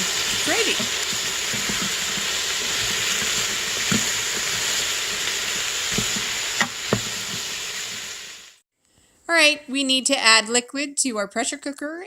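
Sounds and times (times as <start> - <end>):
vegetables sizzling in oil: 0.0 - 8.6.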